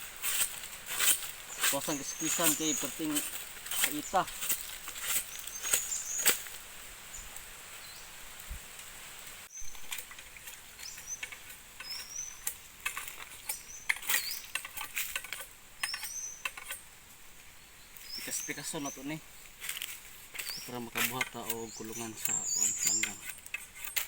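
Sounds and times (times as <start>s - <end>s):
high bird chirps: 1.0s - 6.5s, 10.8s - 12.5s, 13.4s - 14.8s, 15.8s - 16.8s, 20.4s - 23.3s
hands working rattan: 9.8s - 16.9s, 19.6s - 24.0s.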